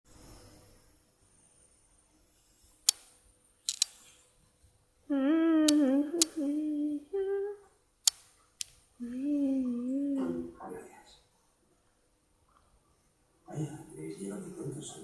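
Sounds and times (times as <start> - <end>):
sharp clicks: 2.8 - 4.0, 8.0 - 8.8
person humming: 5.1 - 7.7, 9.0 - 10.6.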